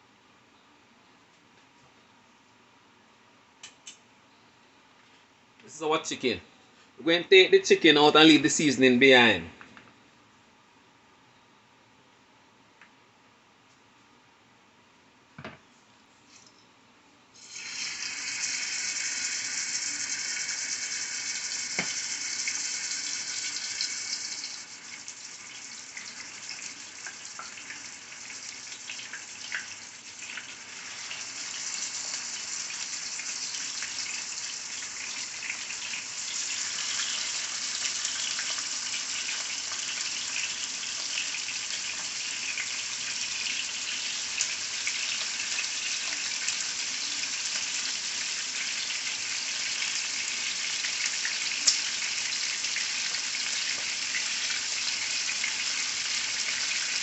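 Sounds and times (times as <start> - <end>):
chicken sizzling in hot oil: 17.4 - 57.0.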